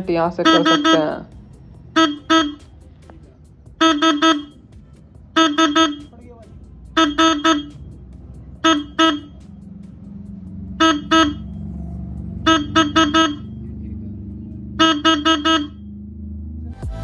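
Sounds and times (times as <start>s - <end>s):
motorcycle horn toots: 0.3s - 1.3s, 1.9s - 2.8s, 3.7s - 6.2s, 6.9s - 9.6s, 10.6s - 11.7s, 12.3s - 13.6s, 14.7s - 15.9s.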